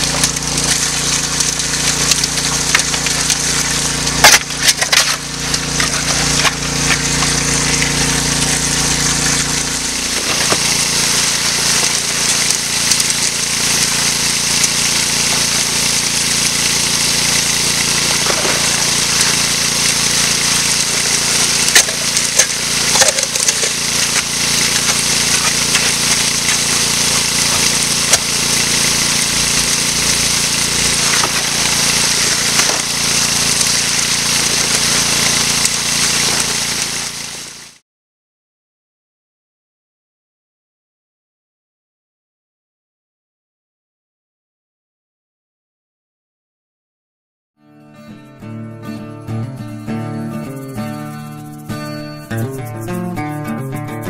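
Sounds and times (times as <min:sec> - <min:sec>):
gravel and rocks clattering: 0:00.0 - 0:08.0, 0:09.4 - 0:14.0, 0:17.1 - 0:37.0
pump engine low hum: 0:00.0 - 0:37.8
water rushing: 0:00.0 - 0:37.8.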